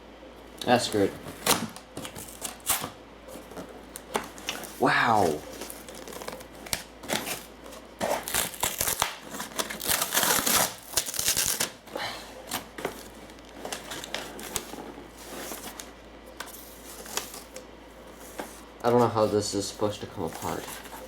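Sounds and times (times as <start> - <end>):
packaging crinkling and tearing: 0.6 - 11.8, 12.4 - 17.6.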